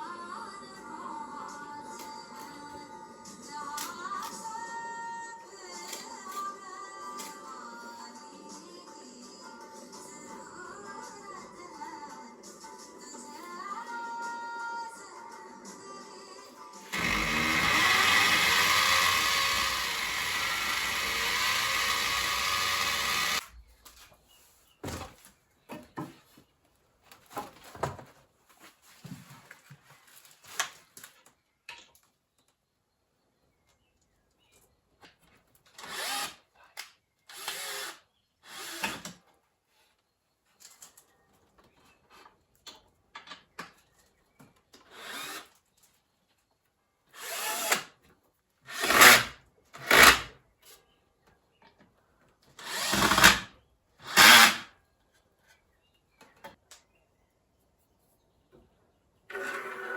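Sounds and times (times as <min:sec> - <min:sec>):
power tool running: 0:16.9 - 0:23.5
wood scraping: 0:17.0 - 0:23.4.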